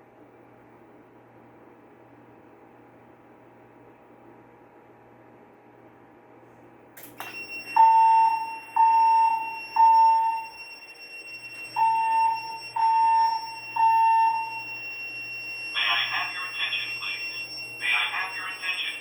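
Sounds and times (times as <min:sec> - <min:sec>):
steady high alarm tone: 0:07.0 - 0:19.0
low alarm beeps: 0:07.1 - 0:19.0.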